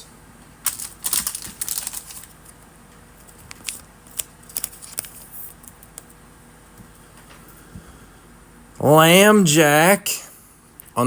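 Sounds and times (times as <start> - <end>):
trading cards rustling: 0.6 - 2.6, 3.2 - 6.0.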